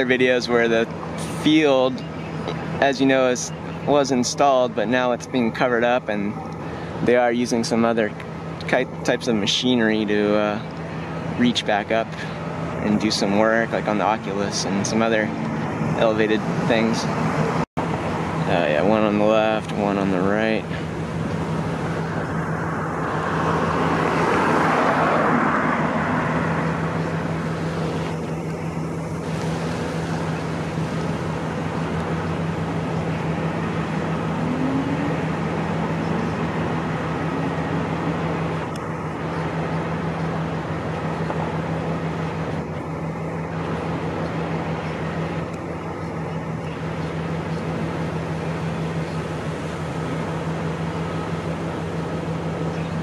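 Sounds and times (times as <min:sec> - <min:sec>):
low steady hum: 0:00.0 - 0:53.0
road traffic: 0:00.0 - 0:53.0
vehicle passing: 0:12.1 - 0:42.6.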